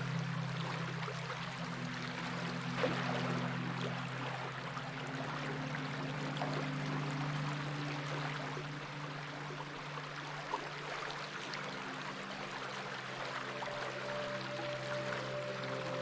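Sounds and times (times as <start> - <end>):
soft low music notes: 0.0 - 16.0
stream water running: 0.0 - 16.0.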